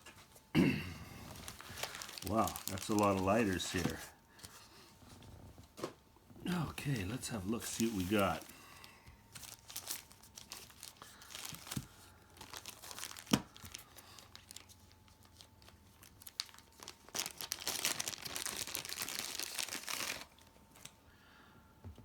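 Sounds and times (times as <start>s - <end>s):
packaging crinkling: 1.3s - 4.7s, 6.8s - 20.9s.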